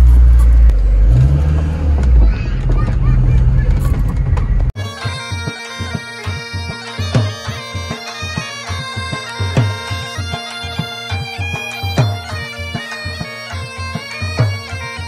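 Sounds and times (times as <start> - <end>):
regular drum beat: 4.2 - 14.9
reedy wind instrument melody: 4.8 - 15.0.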